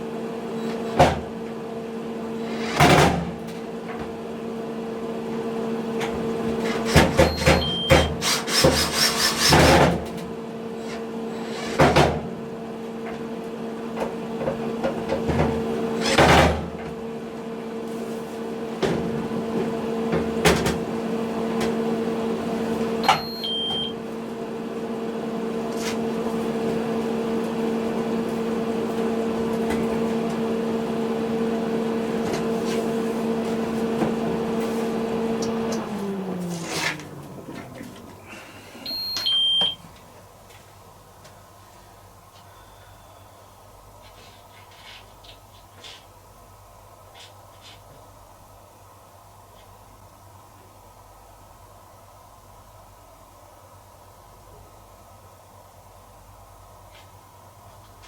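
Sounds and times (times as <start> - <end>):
tumble dryer humming: 9.8 - 41.1.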